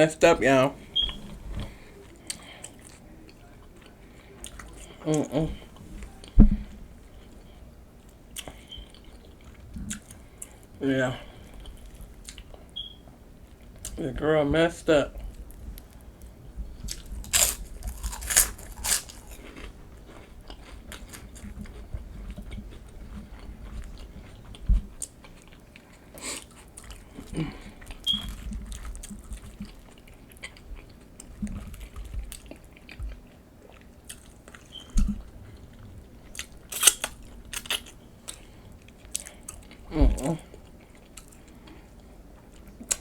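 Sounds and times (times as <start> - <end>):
chewing: 1.0 - 10.7, 11.3 - 14.0, 16.8 - 43.0
crunchy bites into chips: 16.9 - 21.8, 36.4 - 38.4.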